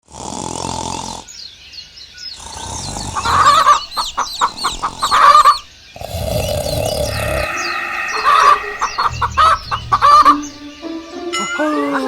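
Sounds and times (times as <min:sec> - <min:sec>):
small birds chirping: 0:01.0 - 0:10.8
chickens clucking: 0:02.7 - 0:10.6.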